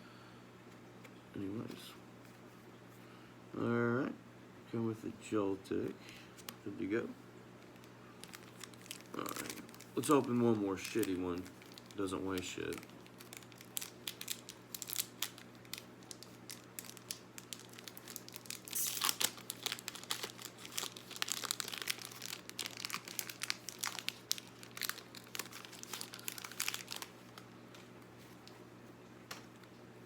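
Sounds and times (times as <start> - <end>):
foil wrapper tearing and crinkling: 7.7 - 27.5.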